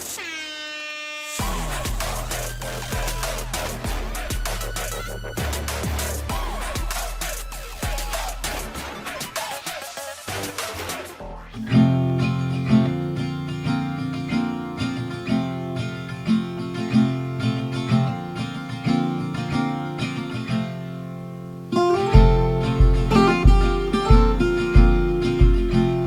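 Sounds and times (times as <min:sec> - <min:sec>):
heavy bass pulse: 0:01.4 - 0:08.8, 0:22.2 - 0:26.0
acoustic guitar strumming: 0:11.6 - 0:26.0.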